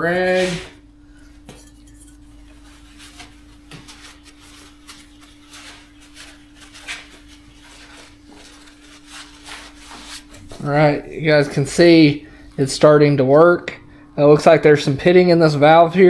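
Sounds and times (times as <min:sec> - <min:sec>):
rag wiping: 0:00.0 - 0:12.4
steady low hum: 0:00.0 - 0:16.0.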